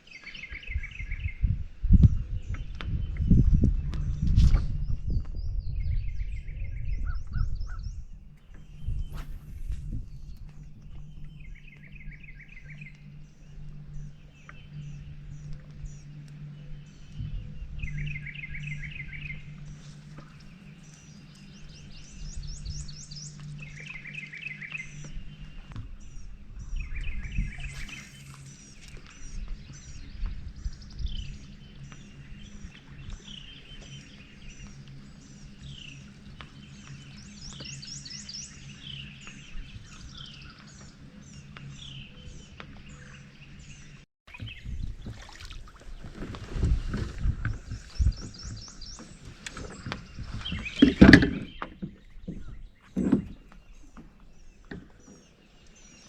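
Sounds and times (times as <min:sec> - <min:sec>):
birds chirping and singing: 0:00.0 - 0:56.0
steady low hum: 0:00.0 - 0:56.0
thumps and knocks: 0:50.8 - 0:53.6.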